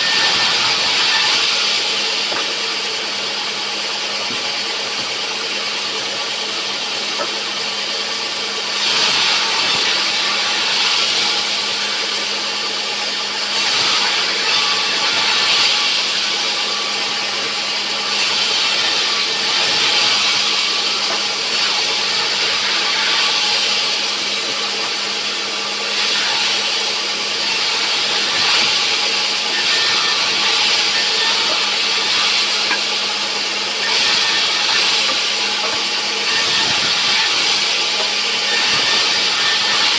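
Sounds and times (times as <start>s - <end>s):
saw machine humming: 0.0s - 11.7s, 13.6s - 39.9s
saw cutting log hissing: 18.0s - 39.9s.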